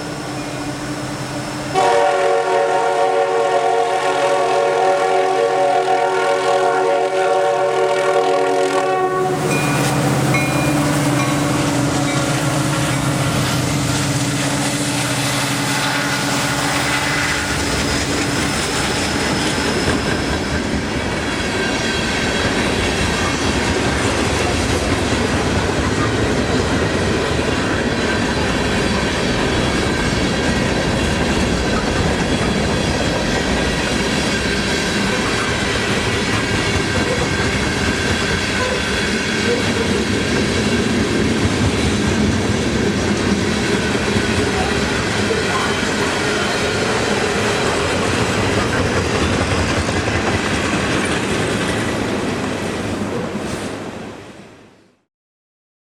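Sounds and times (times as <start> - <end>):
train wheels clacking: 9.4 - 53.8.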